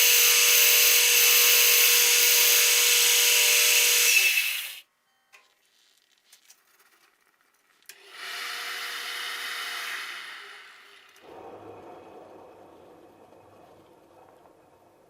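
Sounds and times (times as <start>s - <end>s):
electric power tool stopping: 8.0s - 11.2s.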